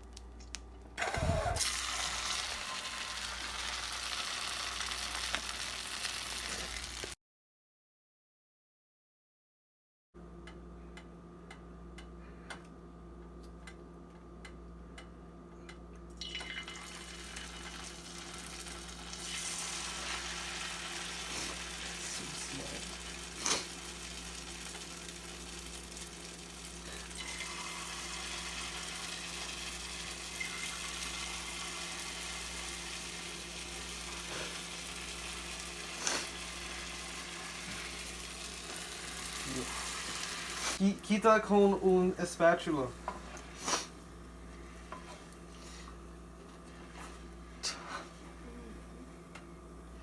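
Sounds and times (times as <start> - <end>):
dough sizzling in hot oil: 1.6 - 7.2, 16.2 - 40.9.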